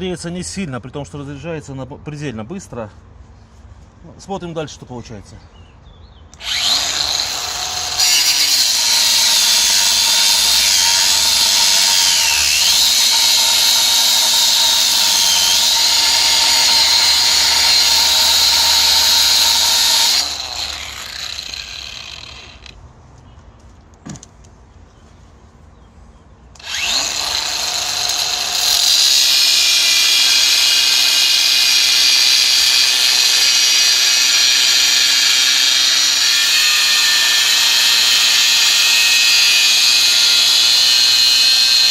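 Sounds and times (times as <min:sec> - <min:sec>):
angle grinder cutting steel: 0:06.4 - 0:22.8, 0:26.6 - 0:41.9.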